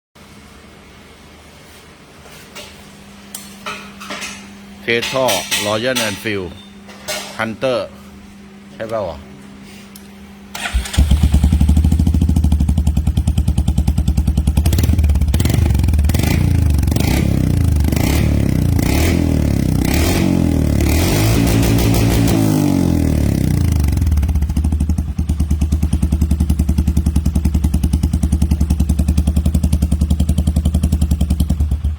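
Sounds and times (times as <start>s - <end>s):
motorcycle engine revving and idling: 10.6s - 31.9s.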